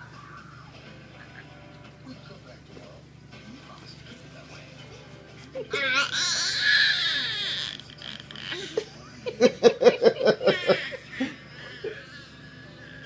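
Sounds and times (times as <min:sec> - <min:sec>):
child squealing: 0:05.8 - 0:07.8.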